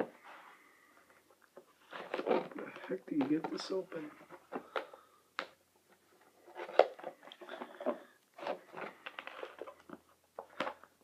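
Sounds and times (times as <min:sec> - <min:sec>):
plastic packaging crackling: 0:06.4 - 0:11.0.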